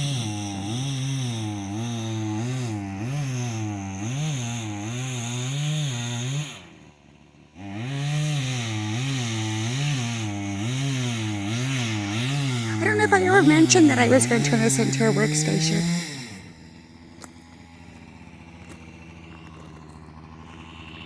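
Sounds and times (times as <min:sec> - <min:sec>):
chainsaw revving: 0:00.0 - 0:16.6.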